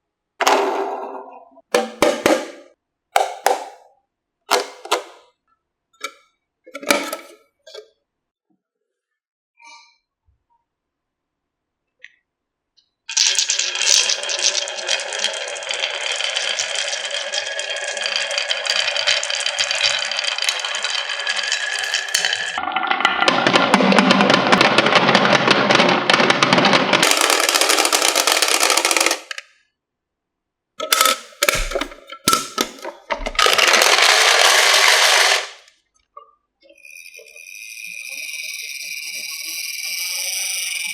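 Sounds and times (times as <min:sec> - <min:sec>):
marbles rattling down wooden run: 0:13.2 - 0:29.4, 0:30.9 - 0:35.7, 0:36.8 - 0:40.9.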